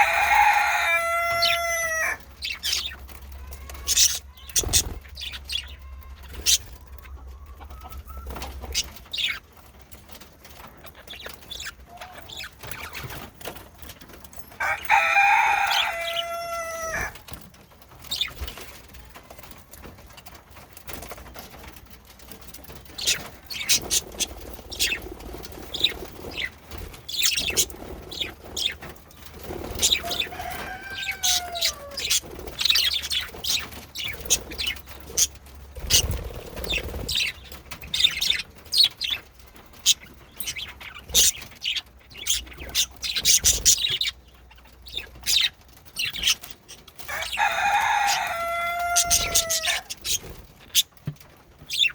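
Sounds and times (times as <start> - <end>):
budgerigars chirping and chattering: 0.0 - 18.9, 22.3 - 51.9
drawn-out bird call: 29.6 - 39.2, 39.8 - 51.0.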